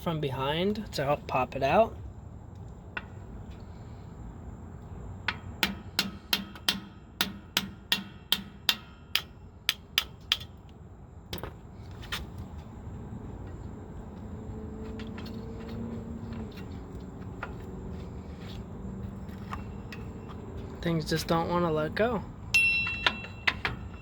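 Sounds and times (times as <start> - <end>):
hammer striking metal: 5.3 - 10.5, 22.6 - 24.0.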